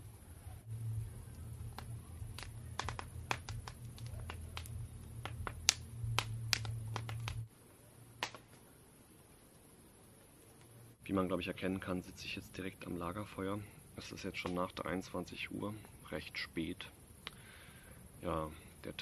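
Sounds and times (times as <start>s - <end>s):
campfire crackling and popping: 0.0s - 11.5s, 13.2s - 15.1s
low steady rumble: 0.0s - 19.0s.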